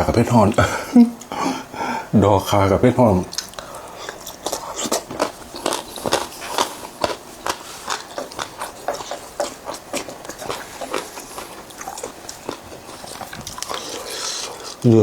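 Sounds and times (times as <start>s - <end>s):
person chewing food: 3.3s - 15.0s.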